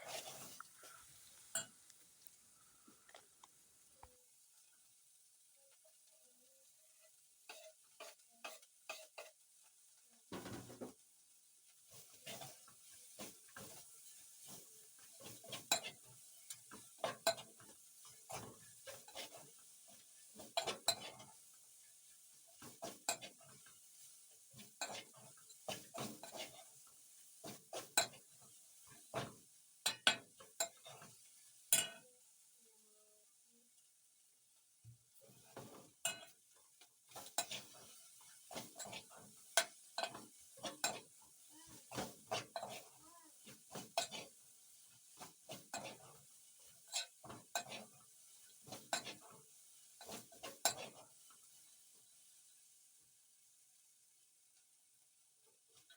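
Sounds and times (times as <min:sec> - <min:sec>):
spoon scraping a pot: 0:00.0 - 0:01.9, 0:07.4 - 0:09.4, 0:11.9 - 0:21.5, 0:22.5 - 0:32.0, 0:35.2 - 0:36.4, 0:37.1 - 0:51.4.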